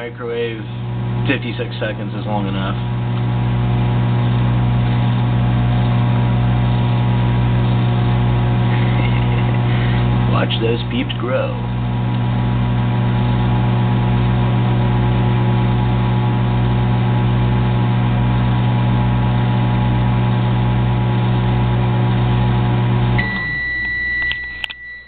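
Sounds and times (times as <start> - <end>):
microwave oven humming: 0.0 - 25.0
long high beep: 23.2 - 25.0.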